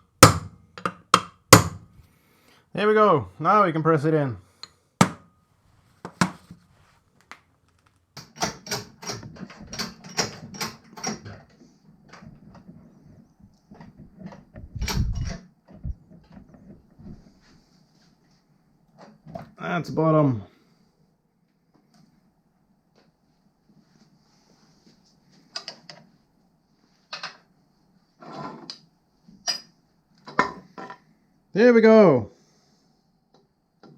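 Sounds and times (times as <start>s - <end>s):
tool clicks and knocks: 0.2s - 1.9s, 5.0s - 5.3s, 6.0s - 6.4s.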